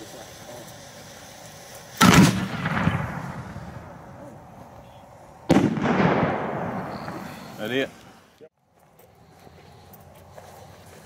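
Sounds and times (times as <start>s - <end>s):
firework shell bursting: 0.0s - 4.4s, 5.5s - 8.3s
firework mortar bang: 2.0s - 4.3s, 5.5s - 7.9s.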